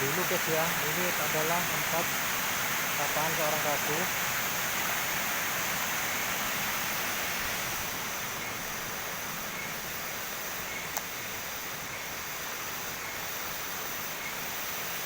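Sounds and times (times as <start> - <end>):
waterfall rushing: 0.0 - 10.6.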